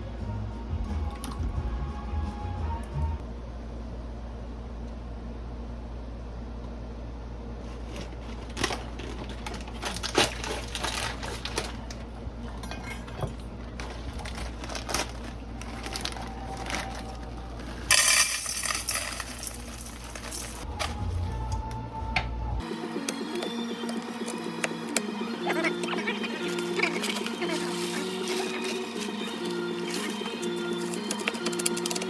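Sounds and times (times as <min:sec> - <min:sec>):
steady low hum: 0:00.0 - 0:32.0
bag crinkling and rustling: 0:07.6 - 0:21.2, 0:25.8 - 0:32.0
dry stuffing crackling: 0:07.6 - 0:21.2, 0:23.9 - 0:32.0.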